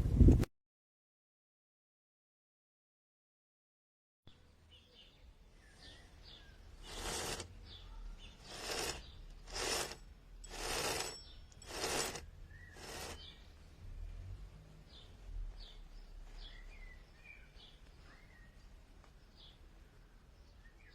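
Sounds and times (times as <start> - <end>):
faint birds chirping: 4.3 - 20.9
rasping strokes: 6.8 - 7.6, 8.4 - 13.4.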